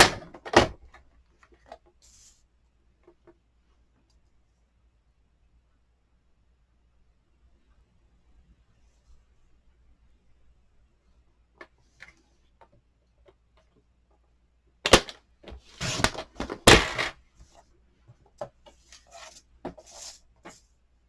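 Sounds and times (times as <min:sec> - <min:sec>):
cardstock scraping slides: 0:14.9 - 0:17.1.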